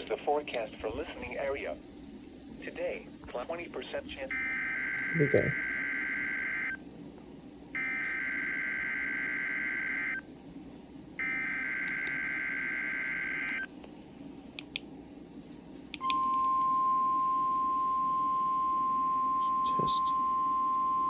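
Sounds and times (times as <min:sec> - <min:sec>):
steady warning alarm tone: 0:04.3 - 0:06.8, 0:07.8 - 0:10.2, 0:11.2 - 0:13.7, 0:16.0 - 0:21.0.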